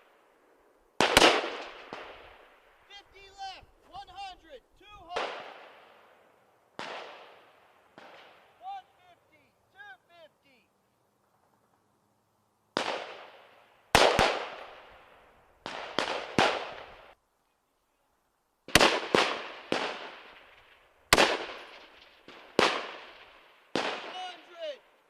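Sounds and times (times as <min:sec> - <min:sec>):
rifle shots echoing: 0:01.0 - 0:02.9, 0:05.1 - 0:09.0, 0:12.8 - 0:17.2, 0:18.7 - 0:25.0.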